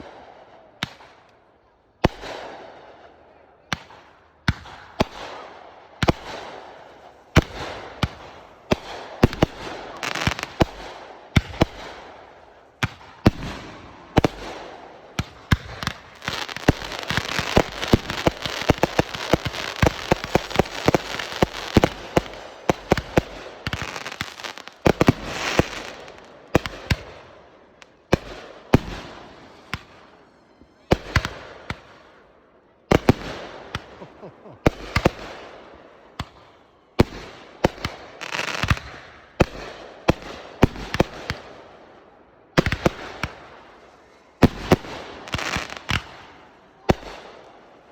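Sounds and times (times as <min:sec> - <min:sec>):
fireworks bangs: 0:06.0 - 0:32.2, 0:42.5 - 0:47.8.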